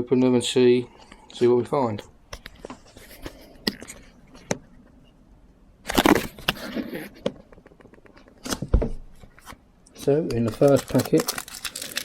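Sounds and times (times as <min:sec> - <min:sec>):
plastic packaging crinkling: 0:10.0 - 0:12.0.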